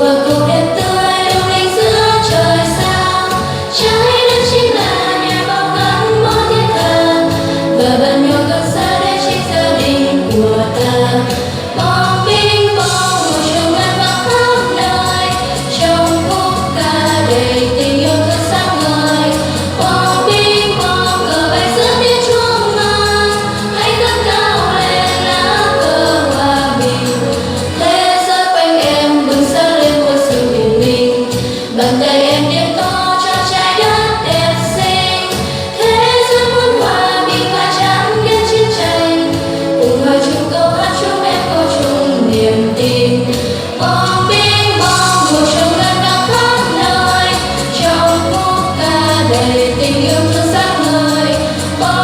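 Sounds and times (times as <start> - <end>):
instrumental accompaniment: 0.0 - 52.0
children singing in chorus: 0.8 - 10.5, 11.8 - 27.0, 31.8 - 39.4.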